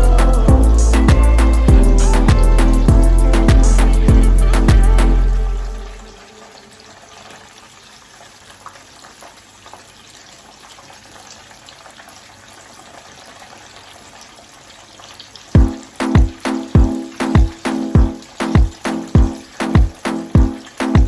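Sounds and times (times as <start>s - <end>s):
water running from tap: 15.0s - 21.0s.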